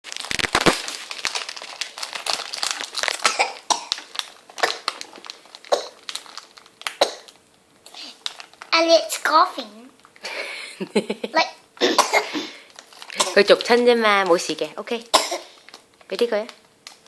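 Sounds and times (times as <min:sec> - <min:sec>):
pet coughing and hacking: 0:03.2 - 0:04.0, 0:05.7 - 0:06.0, 0:11.8 - 0:12.6, 0:15.1 - 0:15.5.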